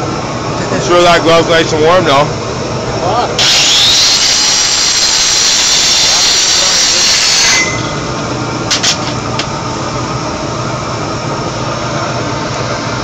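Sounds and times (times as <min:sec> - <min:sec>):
welding machine humming: 0:02.8 - 0:13.0.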